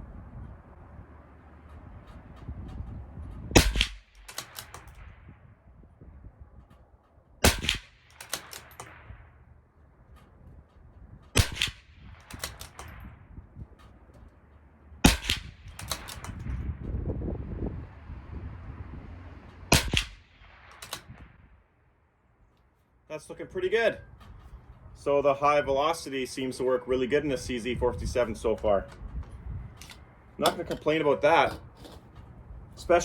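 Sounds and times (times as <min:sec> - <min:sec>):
quiet rifle bolt clicks: 0:03.6 - 0:05.1, 0:06.6 - 0:09.0, 0:10.1 - 0:13.1, 0:13.8 - 0:16.6, 0:19.8 - 0:21.2, 0:28.6 - 0:32.3
rifle shots cracking: 0:03.6 - 0:05.1, 0:07.4 - 0:09.4, 0:11.4 - 0:13.1, 0:15.0 - 0:16.5, 0:19.7 - 0:21.2.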